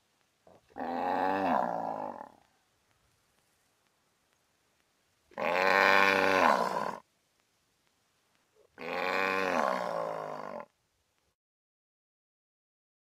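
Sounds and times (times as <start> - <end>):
cow mooing: 5.4 - 7.0, 8.8 - 10.7.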